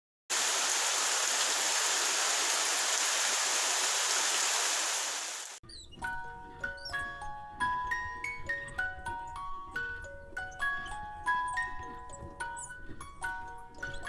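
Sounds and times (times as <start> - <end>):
steady rain falling: 0.3 - 5.6
light music with glockenspiel: 5.7 - 14.0.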